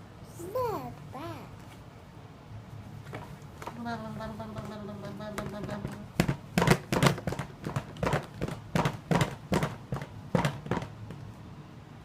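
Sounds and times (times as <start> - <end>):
sharp irregular knocks: 5.4 - 11.2.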